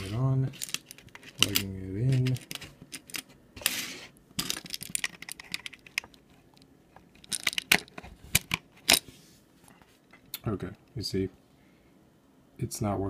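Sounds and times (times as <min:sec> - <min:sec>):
plastic clicks and rattles: 0:04.4 - 0:09.0.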